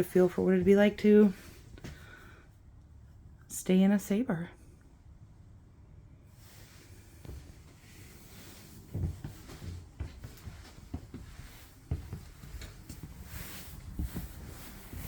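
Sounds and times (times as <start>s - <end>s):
footsteps on camper floor: 7.2s - 15.0s.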